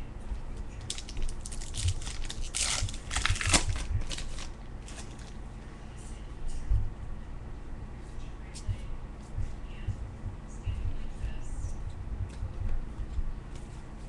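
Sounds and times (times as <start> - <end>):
paper and foil crinkling: 0.8 - 5.4.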